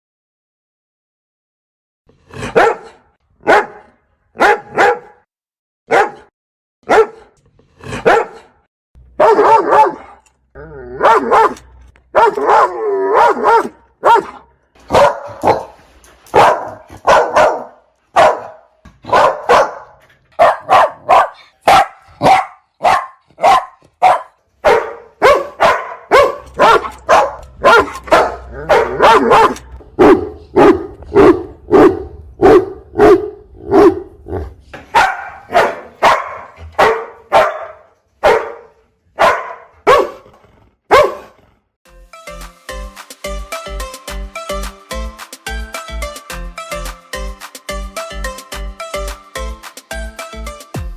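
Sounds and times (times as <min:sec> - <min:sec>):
dogs barking: 0:02.4 - 0:05.2, 0:05.9 - 0:07.3, 0:08.0 - 0:08.5, 0:09.2 - 0:10.3, 0:11.0 - 0:40.3, 0:40.9 - 0:41.4.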